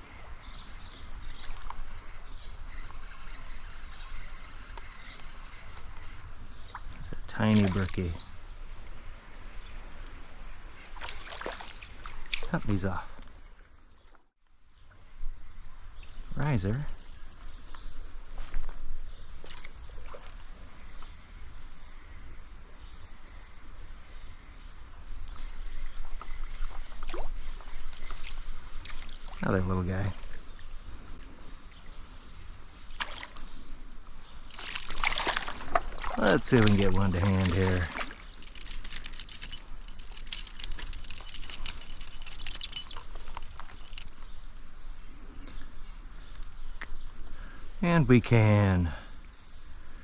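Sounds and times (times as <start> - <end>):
brief splashes: 11.0 - 12.6, 34.5 - 38.4
stream water rushing: 34.5 - 44.1
fishing reel clicking: 38.2 - 44.2.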